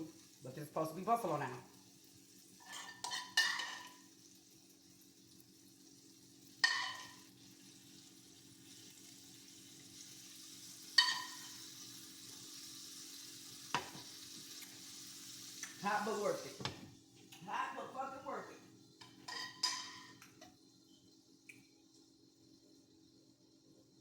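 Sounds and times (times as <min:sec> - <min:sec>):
tortilla sizzling in a pan: 0:00.0 - 0:24.0
utensil clinking on cookware: 0:02.6 - 0:04.0, 0:06.6 - 0:07.2, 0:11.0 - 0:11.6, 0:19.0 - 0:20.5.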